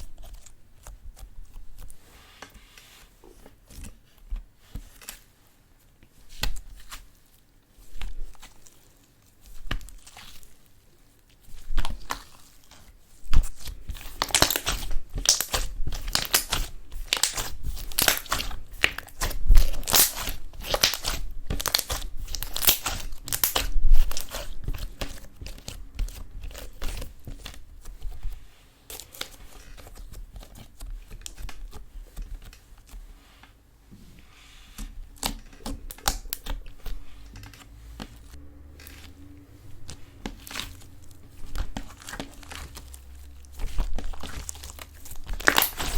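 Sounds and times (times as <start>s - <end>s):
slime squishing with sticky clicks: 11.3s - 32.9s, 34.8s - 45.9s.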